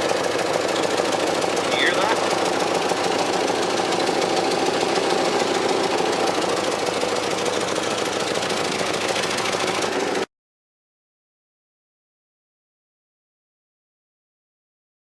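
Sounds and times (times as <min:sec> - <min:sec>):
rough car exhaust drone: 0:00.0 - 0:10.3.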